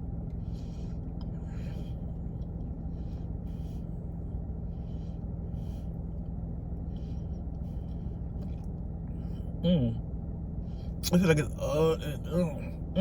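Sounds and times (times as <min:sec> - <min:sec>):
soft chewing noises: 0:00.0 - 0:09.6
steady low hum: 0:00.0 - 0:13.0.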